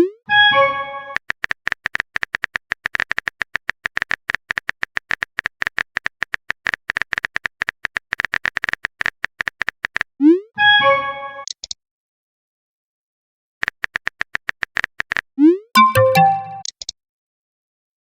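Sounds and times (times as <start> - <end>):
phone keyboard typing clicks: 1.2 - 10.1, 13.6 - 15.2
short chime: 15.8 - 16.6.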